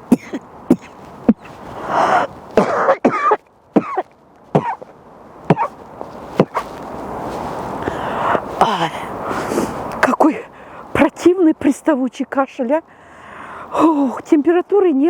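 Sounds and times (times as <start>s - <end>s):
woman coughing: 0.1s - 1.0s, 2.6s - 4.0s, 4.6s - 4.8s, 5.5s - 5.7s
long noisy breath: 7.8s - 8.5s, 10.5s - 10.9s, 12.9s - 13.8s.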